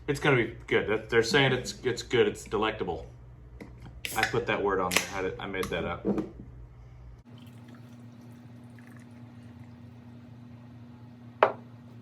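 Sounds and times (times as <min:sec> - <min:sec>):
beer poured into glass: 0:07.3 - 0:10.0.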